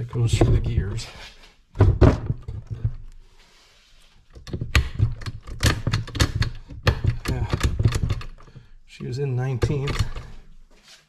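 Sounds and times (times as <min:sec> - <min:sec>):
gear shifter clicks and clunks: 0:09.6 - 0:10.3.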